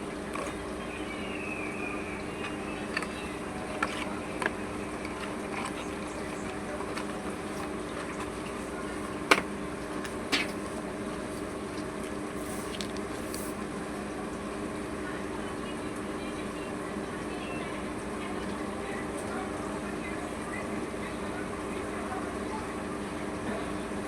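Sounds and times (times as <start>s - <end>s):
steady low hum: 0.0s - 18.0s
clicks and taps handling phone: 2.4s - 10.8s.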